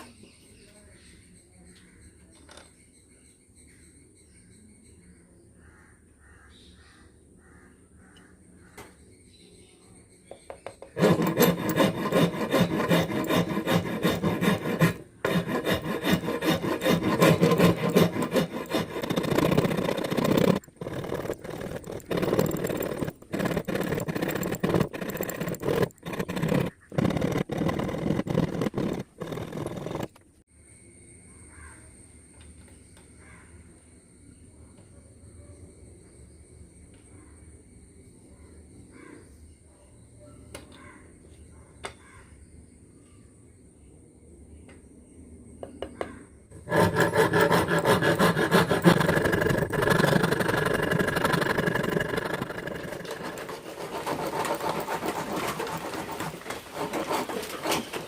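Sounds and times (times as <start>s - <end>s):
hand tool rasping wood: 11.0s - 30.2s, 46.5s - 58.0s.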